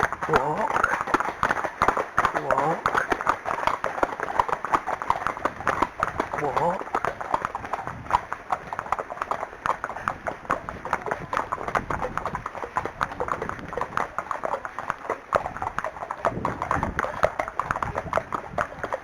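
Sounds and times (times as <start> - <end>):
horse hoof clicks: 0.0 - 19.0.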